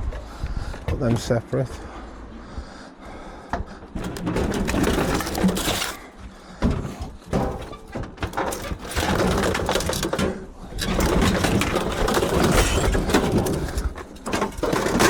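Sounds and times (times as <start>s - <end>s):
scrap items knocking and clicking: 3.5s - 15.0s.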